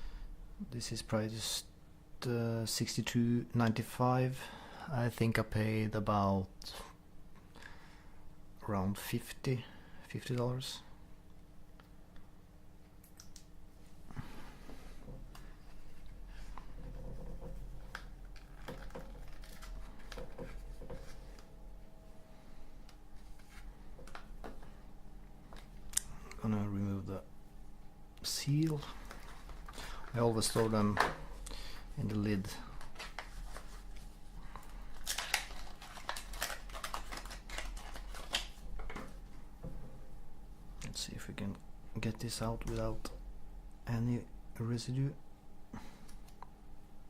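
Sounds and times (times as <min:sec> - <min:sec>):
faint steady hum: 0:00.0 - 0:47.0
papery rustling: 0:15.5 - 0:21.6, 0:28.8 - 0:31.0, 0:31.6 - 0:39.2.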